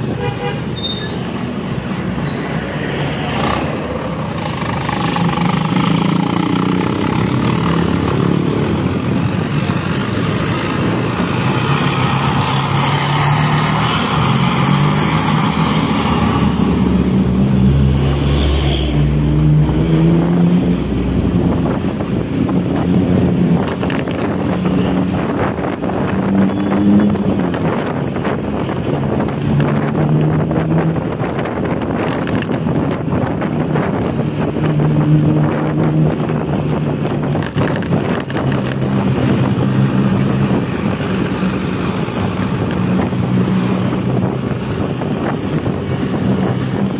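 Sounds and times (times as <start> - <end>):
bus engine and exhaust: 0.0 - 46.9
road noise: 0.0 - 46.9.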